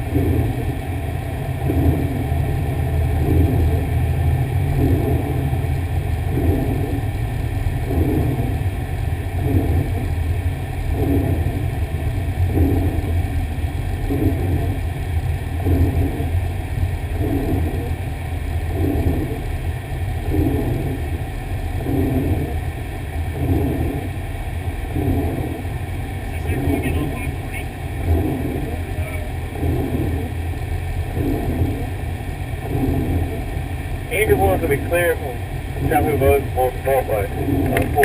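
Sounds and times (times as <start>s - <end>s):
fire engine driving rumble: 0.0s - 38.0s
soft regular pulse: 0.0s - 38.0s.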